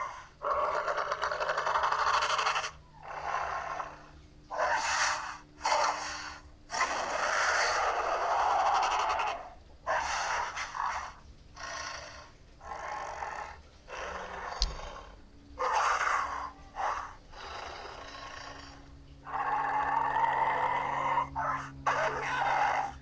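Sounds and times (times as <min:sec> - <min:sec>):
dinosaur growls and snorts: 0:00.0 - 0:23.0
dinosaur roar: 0:00.0 - 0:23.0.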